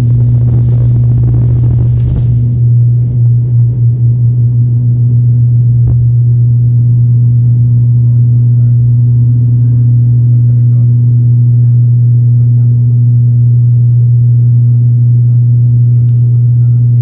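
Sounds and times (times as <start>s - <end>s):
propellers droning: 0.0s - 7.7s.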